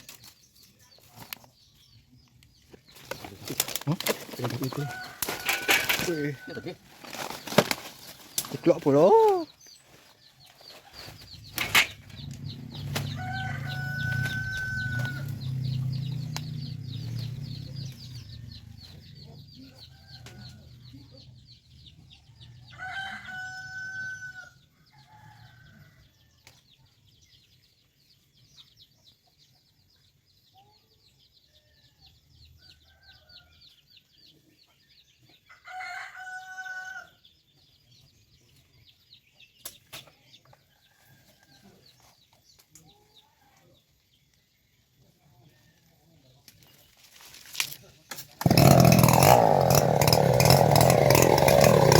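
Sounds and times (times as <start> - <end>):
rooster crowing: 4.8 - 6.8, 13.1 - 15.4, 22.7 - 25.4, 35.6 - 37.1.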